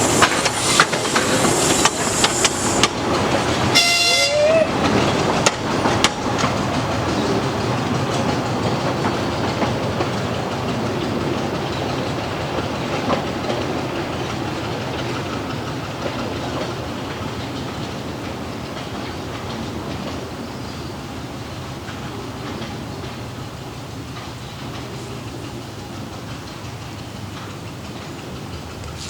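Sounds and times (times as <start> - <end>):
diesel train rolling past: 0.0 - 29.0
wheels clicking over rail joints: 0.0 - 29.0
train horn blast: 3.7 - 4.8.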